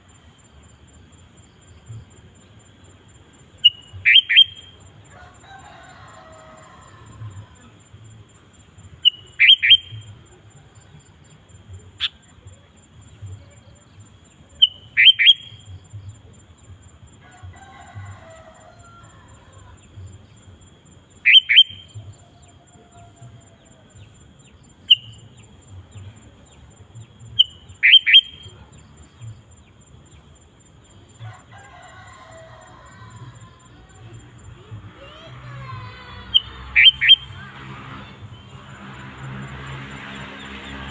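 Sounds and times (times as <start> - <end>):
bird calling: 3.6 - 4.8, 9.0 - 10.2, 21.2 - 23.2, 27.4 - 28.6, 35.0 - 37.5
bird warbling: 36.2 - 37.5.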